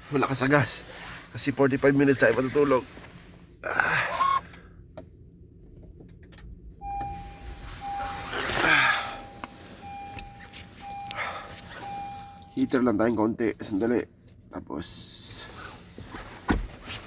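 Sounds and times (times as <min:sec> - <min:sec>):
car warning chime beeping: 0:06.8 - 0:13.3.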